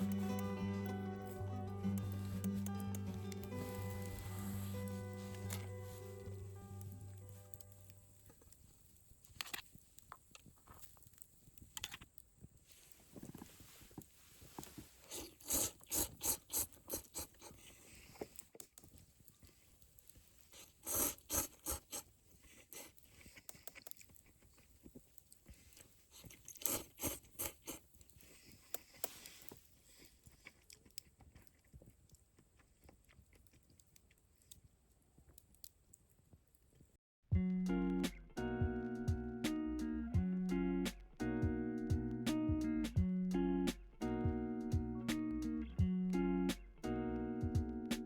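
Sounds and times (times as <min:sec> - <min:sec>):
chewing and crunching food: 0:01.9 - 0:37.0.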